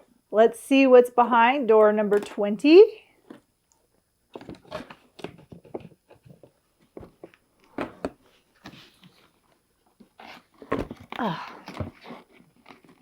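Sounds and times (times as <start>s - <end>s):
cardboard and packaging crackling: 4.3s - 13.0s.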